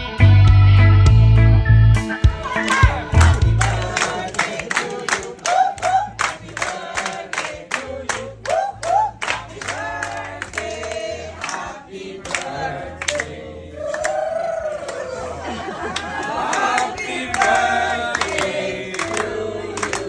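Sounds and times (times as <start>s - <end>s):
bass line: 0.0s - 4.4s, 5.8s - 6.6s, 7.8s - 11.4s
voices singing together: 2.0s - 20.0s
quick steady beat: 2.1s - 5.1s.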